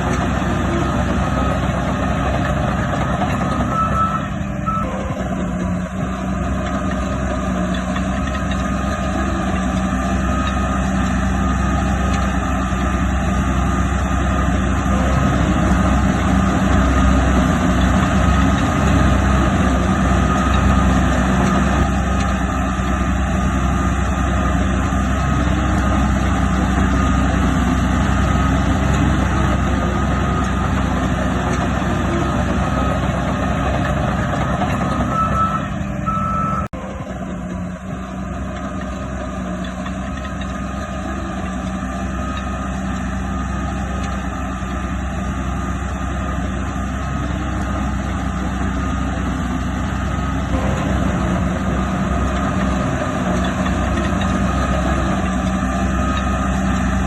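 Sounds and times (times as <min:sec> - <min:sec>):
heavy diesel engines running: 0:00.0 - 0:57.0
reversing alarm beeping: 0:00.7 - 0:05.6, 0:14.8 - 0:22.0, 0:26.7 - 0:38.0, 0:47.7 - 0:57.0.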